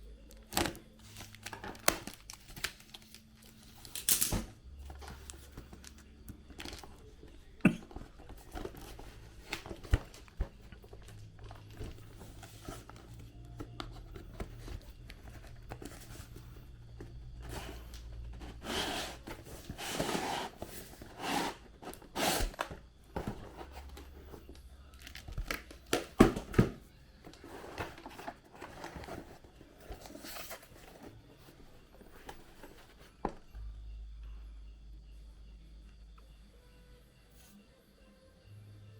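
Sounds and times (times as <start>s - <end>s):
packaging crinkling and rustling: 0.3s - 7.2s.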